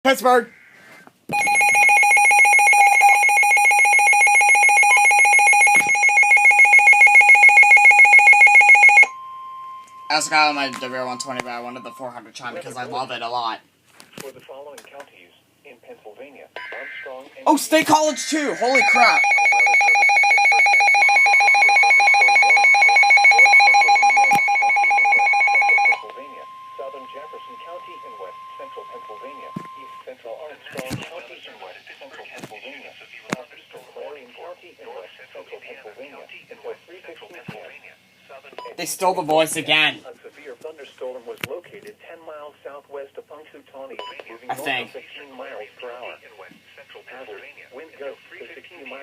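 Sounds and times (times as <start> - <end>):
trilling electronic alarm tone: 0.6 - 12.2, 18.0 - 30.1.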